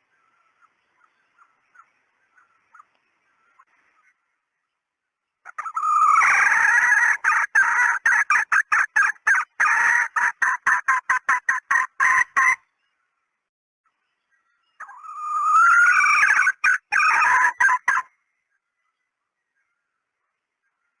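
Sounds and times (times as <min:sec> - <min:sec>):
hen cackling call: 0:05.5 - 0:12.6, 0:14.8 - 0:18.1.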